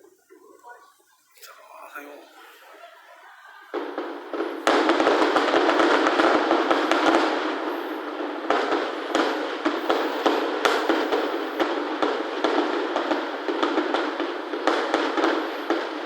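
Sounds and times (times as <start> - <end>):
fireworks crackling barrage: 0.0 - 16.0
sharp firework bangs: 3.3 - 16.0.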